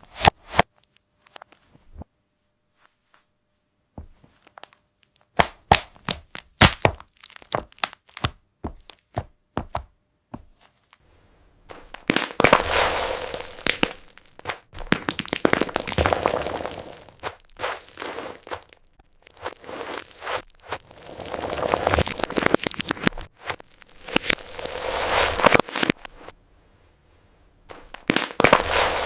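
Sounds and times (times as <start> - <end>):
candy shell cracking and crunching: 4.5 - 9.0, 11.7 - 26.1, 27.7 - 29.0.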